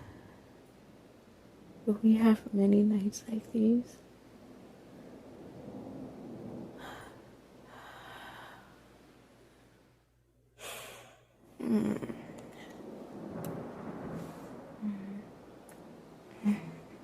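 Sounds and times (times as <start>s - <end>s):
woman breathing softly: 6.8s - 9.8s, 14.2s - 15.3s
woman sighing: 14.8s - 15.3s, 16.4s - 16.9s.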